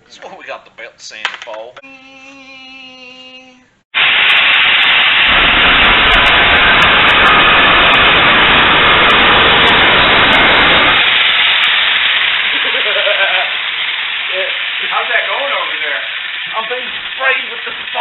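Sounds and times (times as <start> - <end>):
power tool grinding: 4.6 - 18.0
low rumble: 4.9 - 11.1.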